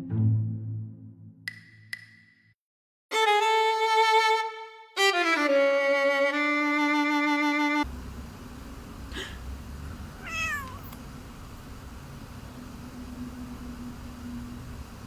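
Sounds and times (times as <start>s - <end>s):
cat meowing: 10.2s - 10.9s.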